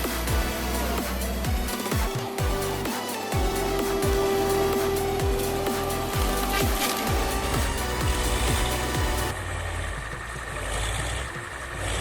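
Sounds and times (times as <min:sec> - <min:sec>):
electronic music: 0:00.0 - 0:11.6
deep falling bass drum hits: 0:05.2 - 0:09.3.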